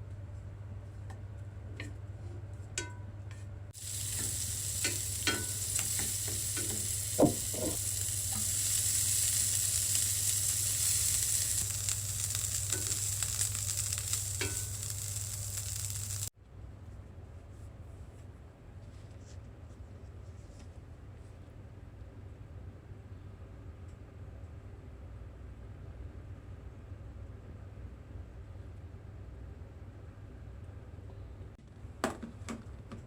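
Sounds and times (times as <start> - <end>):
food sizzling in hot oil: 3.8 - 16.3.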